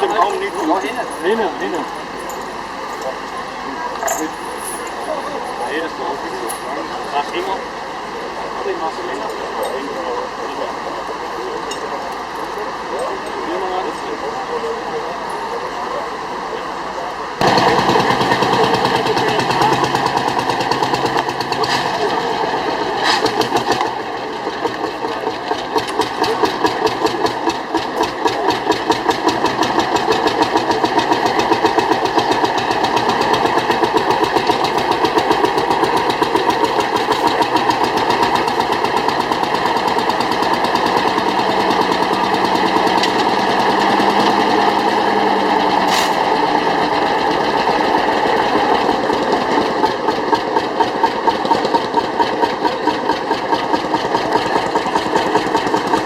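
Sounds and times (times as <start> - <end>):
tractor engine running: 0.0 - 56.0.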